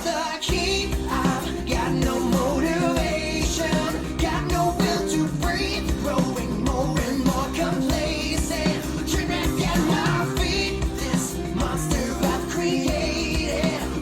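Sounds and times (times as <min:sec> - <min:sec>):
pop song with singing and band: 0:00.0 - 0:14.0.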